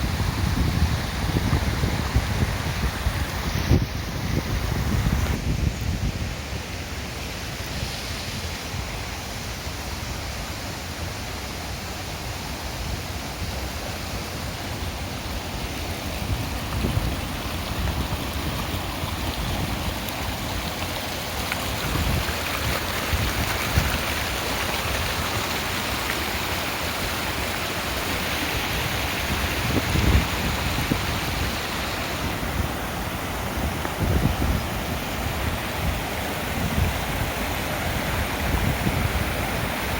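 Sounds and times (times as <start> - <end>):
wind buffeting microphone: 0.0 - 6.4, 15.9 - 20.8, 21.6 - 24.4, 28.6 - 39.8
stream running over stones: 0.0 - 39.9.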